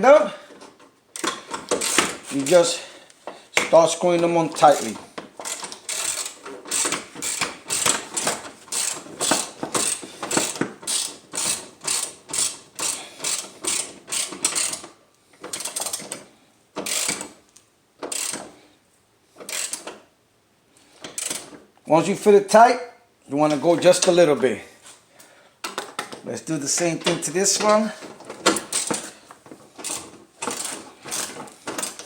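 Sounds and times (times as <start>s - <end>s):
socket ratchet clicking: 1.2s - 2.2s, 5.4s - 14.9s, 16.8s - 17.3s, 19.4s - 20.0s, 28.4s - 29.1s.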